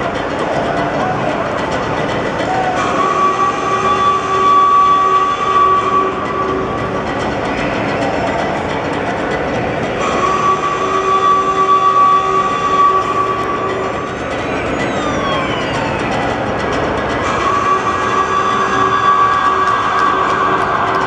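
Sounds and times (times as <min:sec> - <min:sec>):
loud rumbling train-like noise: 0:00.0 - 0:21.0
steady held tones: 0:00.0 - 0:21.0
falling pitch glides: 0:09.9 - 0:21.0.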